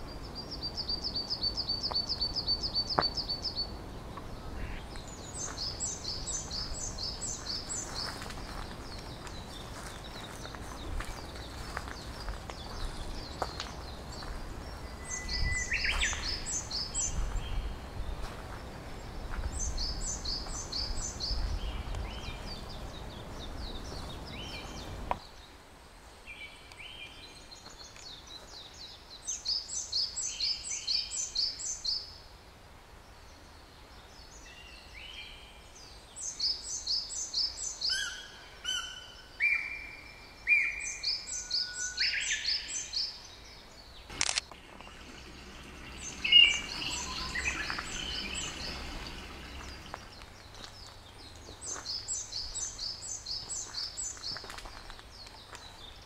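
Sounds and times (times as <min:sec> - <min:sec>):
songbirds singing: 0:00.0 - 0:56.0
low whistled bird notes: 0:14.8 - 0:17.8, 0:44.8 - 0:50.0.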